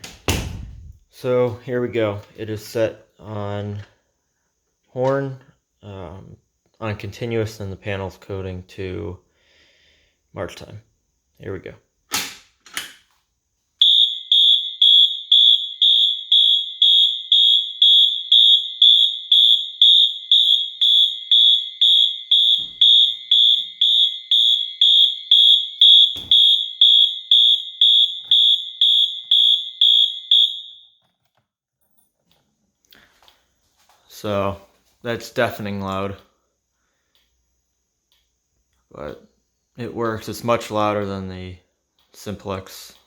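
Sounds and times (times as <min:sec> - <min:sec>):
fire alarm horn blasts: 0:13.8 - 0:31.0.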